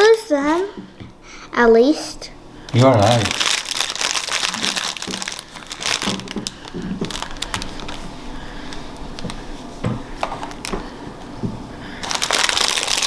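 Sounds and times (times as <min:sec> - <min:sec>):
plastic packaging crinkling: 0:02.7 - 0:09.6, 0:10.2 - 0:10.8, 0:12.0 - 0:13.0.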